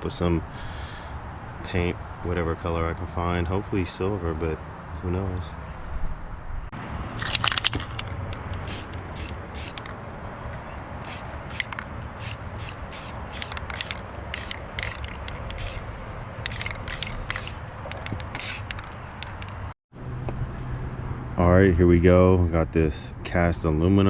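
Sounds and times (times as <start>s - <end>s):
aerosol spray bursts: 8.7s - 9.8s, 11.0s - 15.8s, 16.5s - 17.6s, 18.4s - 18.8s.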